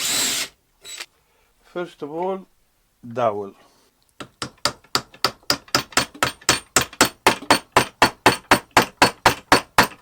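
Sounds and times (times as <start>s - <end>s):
hammer tapping wooden dowel: 4.2s - 10.0s.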